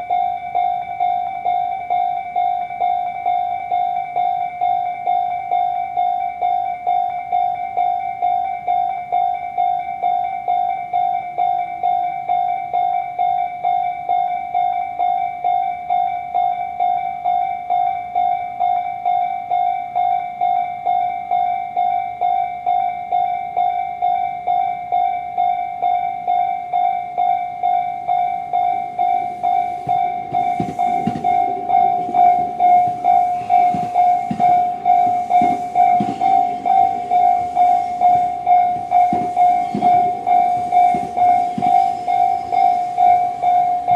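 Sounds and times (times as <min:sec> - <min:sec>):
level crossing alarm ringing: 0:00.0 - 0:43.9
train passing: 0:27.2 - 0:43.9.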